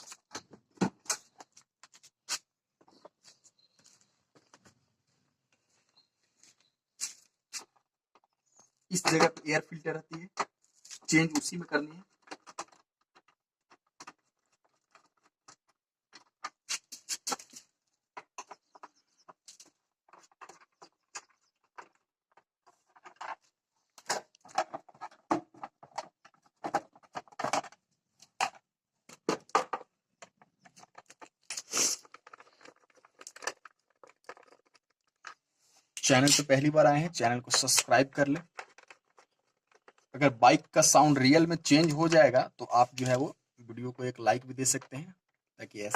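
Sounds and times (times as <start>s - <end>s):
clicks and rattles of hand tools: 10.1s - 35.4s, 37.4s - 40.2s.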